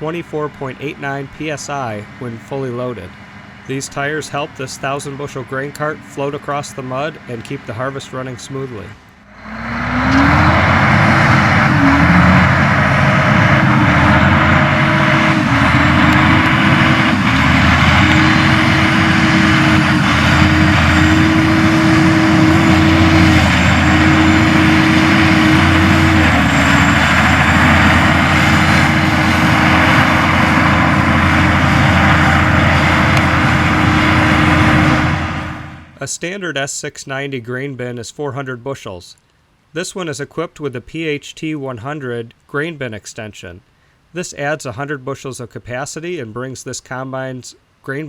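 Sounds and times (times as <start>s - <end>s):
diesel engine drone: 0.0s - 36.0s
mechanical rush: 1.0s - 36.0s
wavering machine whine: 9.3s - 36.0s.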